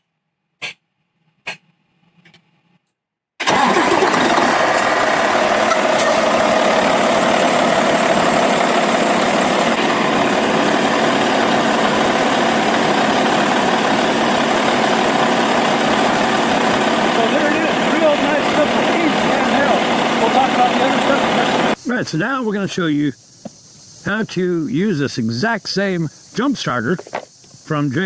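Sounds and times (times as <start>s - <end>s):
diesel truck engine idling: 3.4s - 21.8s.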